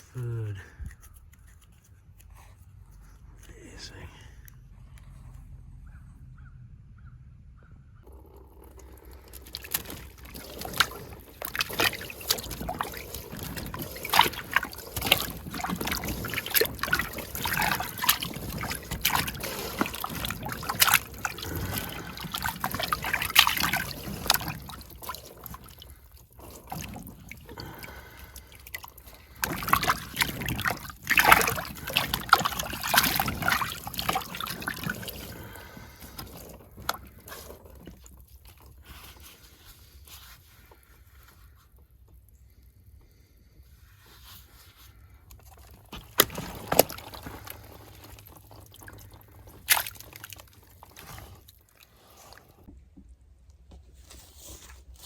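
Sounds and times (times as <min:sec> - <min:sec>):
soil crackling and falling: 0:08.8 - 0:40.9.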